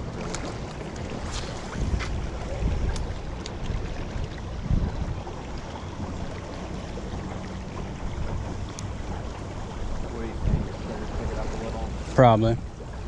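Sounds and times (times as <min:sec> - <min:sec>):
low thumps against boat: 0:00.0 - 0:13.0
water around a boat: 0:00.0 - 0:13.0
wind: 0:00.0 - 0:13.0.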